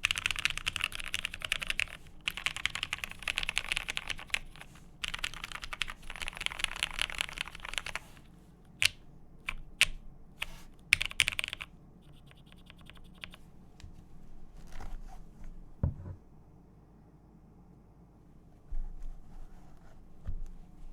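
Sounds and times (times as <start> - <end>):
mechanical keyboard typing: 0.0 - 8.1, 8.8 - 13.4.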